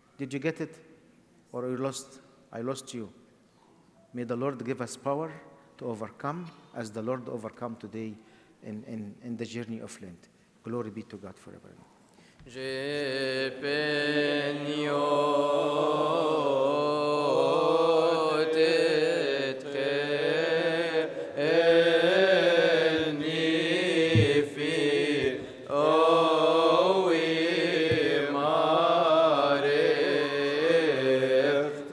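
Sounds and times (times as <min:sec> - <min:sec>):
voices chanting unaccompanied: 0:12.5 - 0:31.9.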